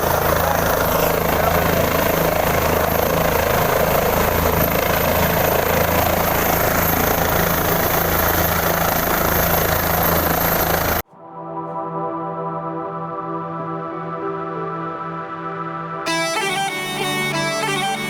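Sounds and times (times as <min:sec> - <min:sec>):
helicopter rotor drone: 0:00.0 - 0:11.0
soft keyboard music: 0:11.0 - 0:18.0.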